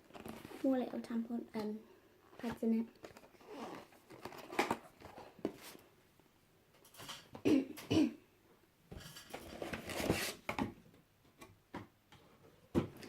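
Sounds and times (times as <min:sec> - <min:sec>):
packaging rustling and clicking: 0:00.0 - 0:00.6, 0:02.4 - 0:05.8
person coughing: 0:07.4 - 0:08.2.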